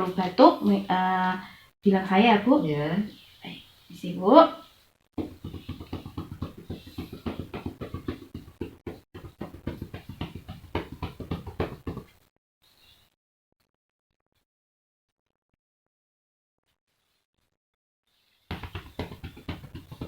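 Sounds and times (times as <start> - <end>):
hand patting on a back: 5.2 - 12.1, 18.5 - 20.0.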